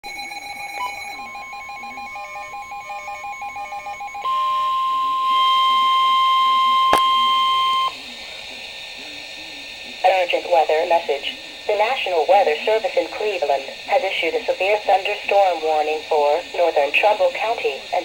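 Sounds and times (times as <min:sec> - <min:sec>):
steady warning alarm tone: 0:00.0 - 0:08.0.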